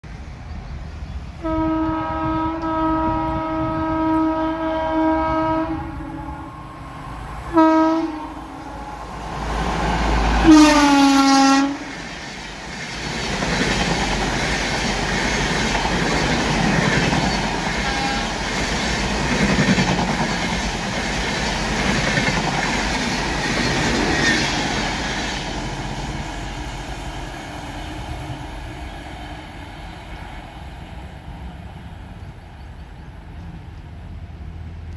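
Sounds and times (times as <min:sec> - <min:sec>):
train coaches rolling past: 0:00.0 - 0:34.9
locomotive horn blasts: 0:01.4 - 0:06.8, 0:07.5 - 0:09.2, 0:10.4 - 0:12.0, 0:17.8 - 0:18.4.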